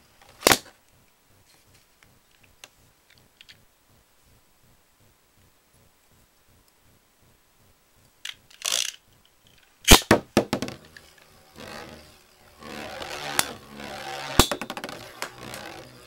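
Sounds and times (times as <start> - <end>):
spinning tops scraping: 8.3 - 9.0, 9.7 - 16.0
launcher whirring rip: 9.9 - 16.0
spinning tops clacking: 9.9 - 16.0.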